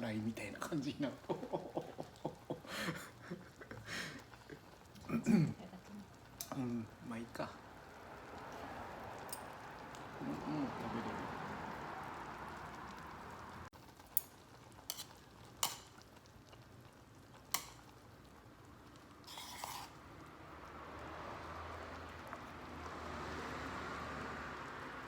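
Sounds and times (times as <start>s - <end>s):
hotpot simmering in metal tin: 0.0s - 25.0s
utensil scraping tin: 19.2s - 20.0s.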